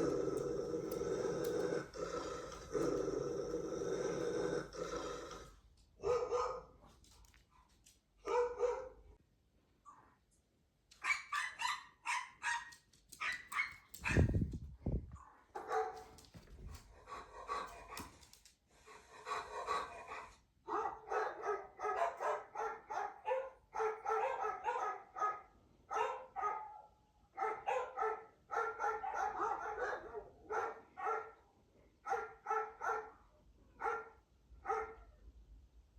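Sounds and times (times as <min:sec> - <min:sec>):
dog barking: 0:06.0 - 0:06.8, 0:08.2 - 0:09.1, 0:11.0 - 0:14.4, 0:15.2 - 0:16.2, 0:17.1 - 0:18.2, 0:19.2 - 0:31.4, 0:32.0 - 0:33.2, 0:33.8 - 0:35.2.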